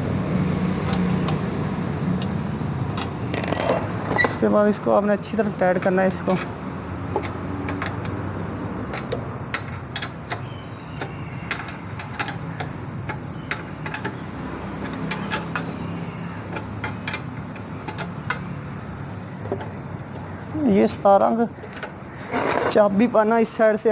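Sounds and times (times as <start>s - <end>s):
spanner clicking on nuts: 0.8s - 4.4s, 5.6s - 18.8s.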